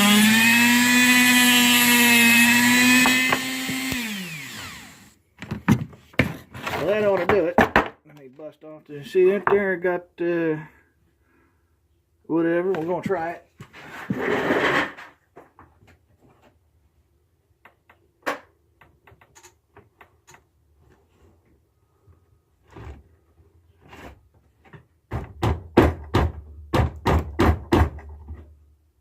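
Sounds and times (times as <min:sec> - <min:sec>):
small clicks and knocks on metal: 0:18.8 - 0:20.5.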